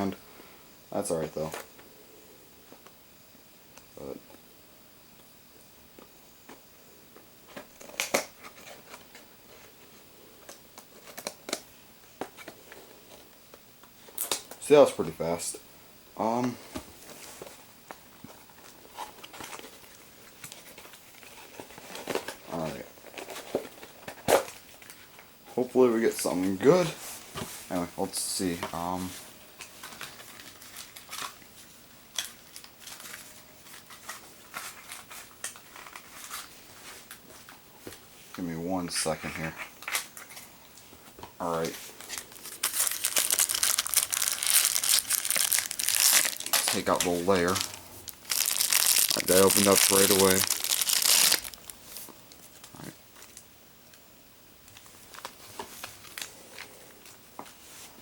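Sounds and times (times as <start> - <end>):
tape and cardboard rustling: 41.6 - 53.4.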